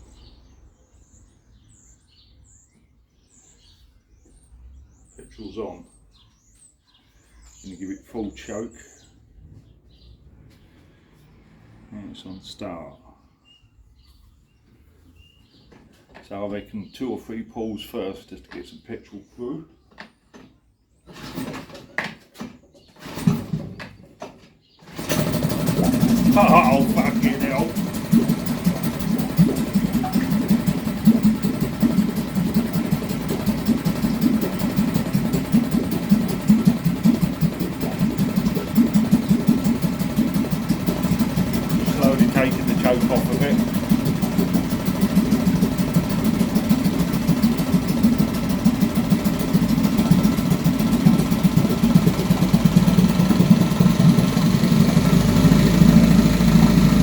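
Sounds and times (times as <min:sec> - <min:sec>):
recoil starter pulls: 0:21.1 - 0:22.0, 0:23.0 - 0:23.9, 0:24.8 - 0:57.0
outboard engine running: 0:24.9 - 0:57.0.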